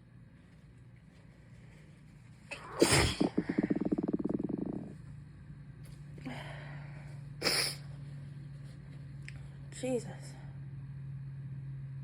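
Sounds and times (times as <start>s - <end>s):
croaky rattling breath out: 2.8s - 4.9s.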